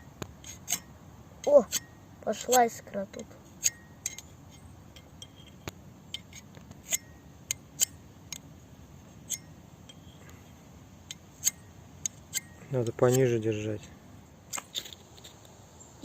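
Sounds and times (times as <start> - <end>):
ferro rod scraping metal: 0.4 - 2.8, 3.4 - 8.0, 9.1 - 13.6.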